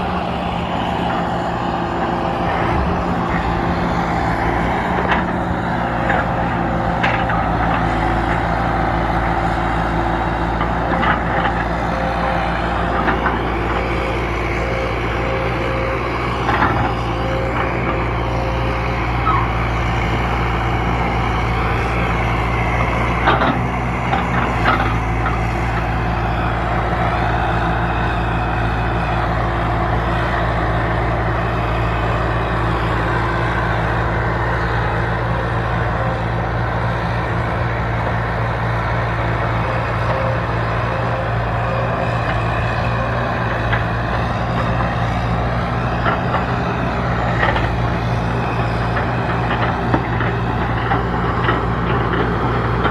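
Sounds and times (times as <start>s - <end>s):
diesel engine running: 0.0s - 52.9s.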